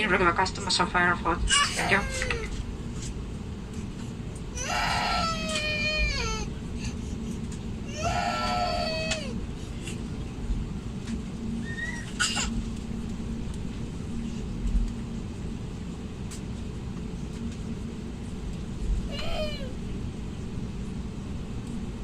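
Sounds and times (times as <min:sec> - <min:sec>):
airplane cabin hum: 0:00.0 - 0:22.0
high falling voice cry: 0:07.9 - 0:09.3, 0:19.1 - 0:19.7.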